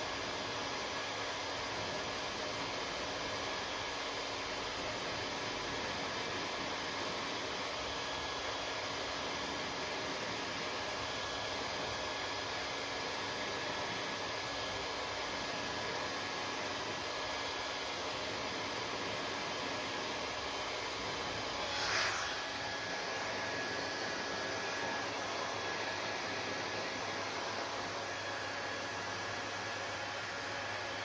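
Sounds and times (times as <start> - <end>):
hair dryer running: 0.0 - 31.0.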